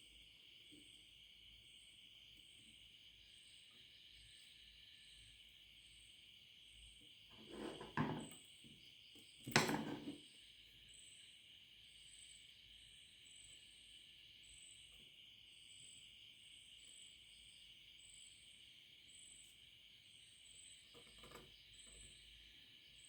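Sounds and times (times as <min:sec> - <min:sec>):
handling noise with sharp knock: 0:07.5 - 0:08.4, 0:09.5 - 0:10.2.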